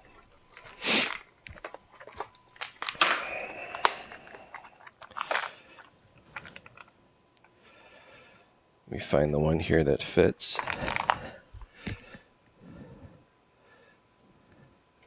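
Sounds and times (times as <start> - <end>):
metal tools clicking and rattling: 0.0 - 7.0, 10.4 - 11.4.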